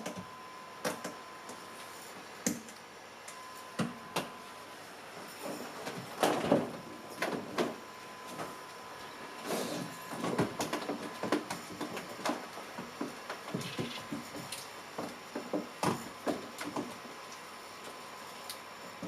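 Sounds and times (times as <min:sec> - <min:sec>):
faint steady tone: 0:00.0 - 0:05.7.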